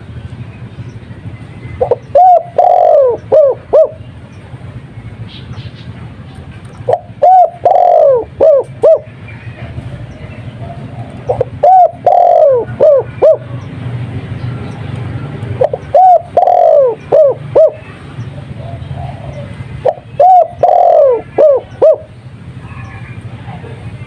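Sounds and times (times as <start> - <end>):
dove cooing: 1.8 - 4.1, 6.8 - 9.2, 10.6 - 13.6, 15.5 - 23.2.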